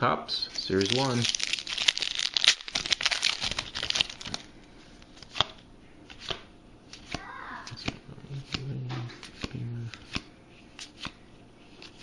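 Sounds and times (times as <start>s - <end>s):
wrapper tearing and crinkling: 0.7s - 4.5s.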